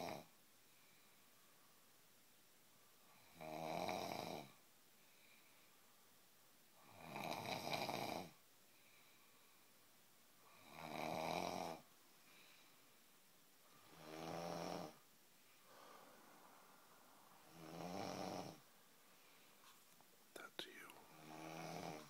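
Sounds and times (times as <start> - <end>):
person snoring: 15.7 - 18.7, 20.6 - 22.0.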